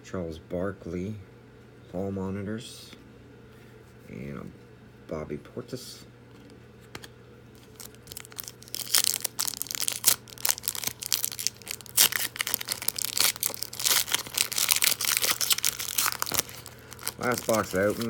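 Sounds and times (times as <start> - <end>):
foil wrapper tearing and crinkling: 7.5 - 18.0.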